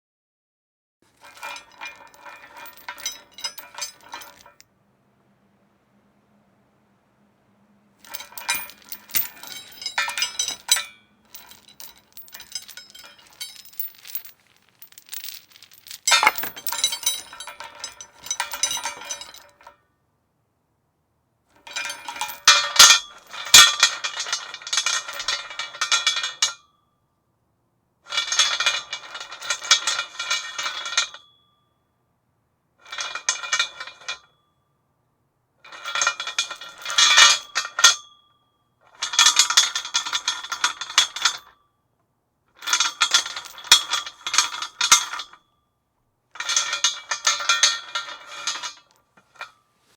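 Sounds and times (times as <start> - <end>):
chain rattling against metal post: 1.2 - 4.6, 8.0 - 19.6.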